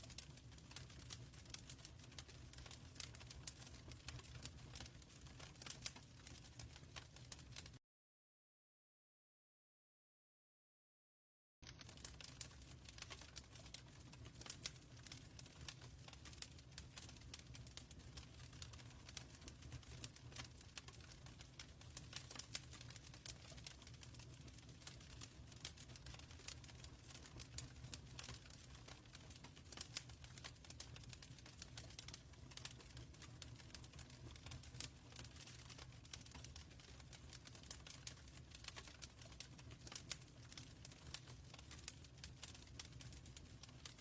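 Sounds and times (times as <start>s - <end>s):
wood fire crackling: 0.0s - 7.8s, 11.6s - 44.0s.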